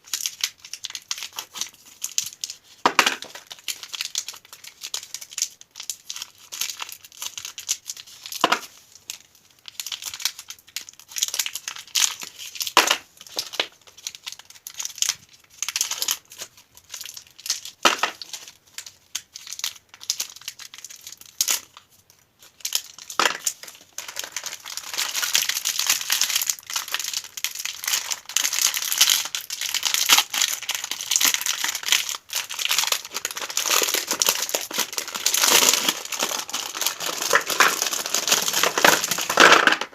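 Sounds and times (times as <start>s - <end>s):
candy wrappers crinkling: 0.0s - 39.9s.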